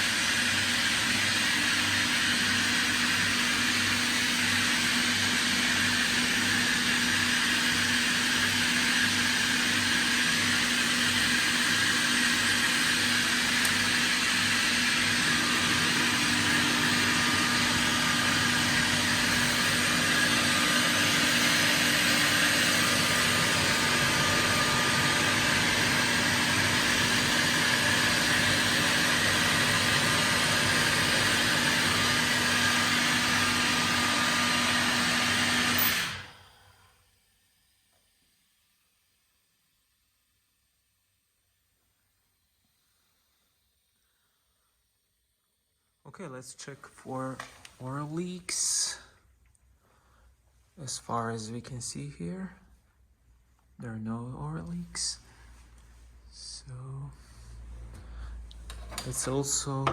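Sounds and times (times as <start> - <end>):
air compressor hiss and hum: 0.0 - 38.4.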